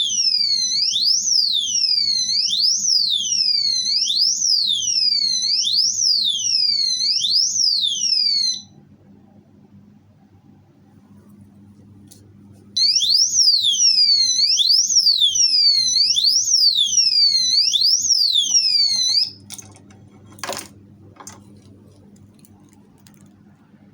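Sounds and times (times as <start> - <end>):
alarm siren wailing: 0.0 - 8.8, 12.8 - 19.4.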